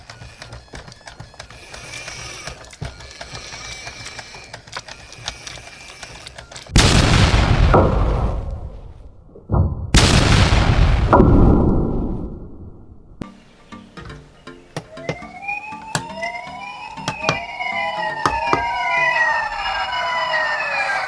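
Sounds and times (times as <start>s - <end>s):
faint clicks: 0.0s - 6.8s
loud booms: 6.7s - 13.2s.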